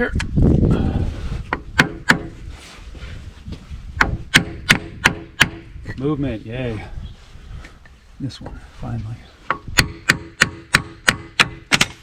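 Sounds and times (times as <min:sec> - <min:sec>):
hammer blows on wood: 0:04.0 - 0:05.8.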